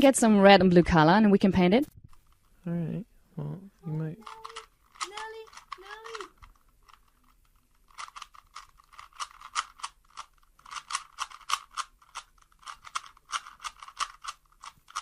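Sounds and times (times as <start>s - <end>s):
rubik's cube plastic clicks: 4.2s - 15.0s.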